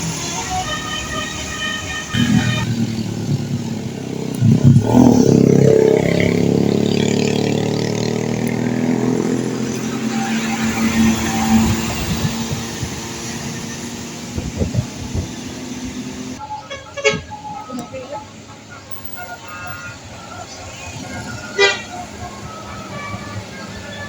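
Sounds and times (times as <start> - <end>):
multi-tone bus horn: 0.0 - 3.0, 7.7 - 13.6, 14.4 - 24.0
bus engine passing: 0.0 - 24.0.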